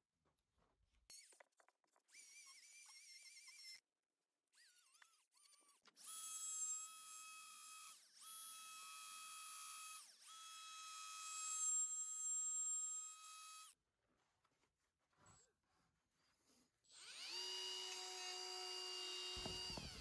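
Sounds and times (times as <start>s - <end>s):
die grinder whining: 16.9s - 20.0s.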